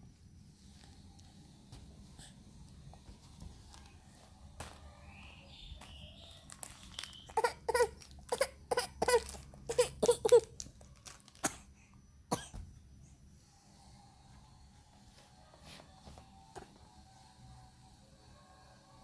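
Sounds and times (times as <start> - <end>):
baby coughing: 7.3 - 10.5, 11.4 - 11.7, 12.3 - 12.6
baby whimpering: 7.3 - 10.5.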